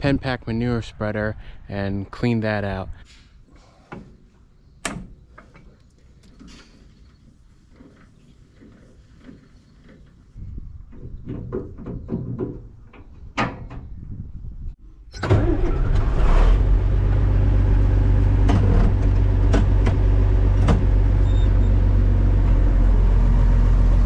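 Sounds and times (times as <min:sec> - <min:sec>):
engine running with low hum: 0:15.2 - 0:24.0.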